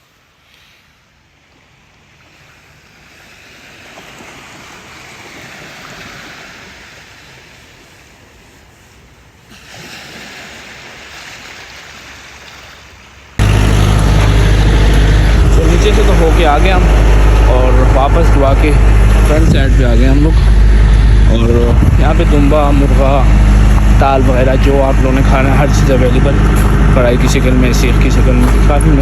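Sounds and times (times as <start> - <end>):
sea waves washing on shore: 0.0 - 29.0
loud steady low hum: 13.4 - 29.0.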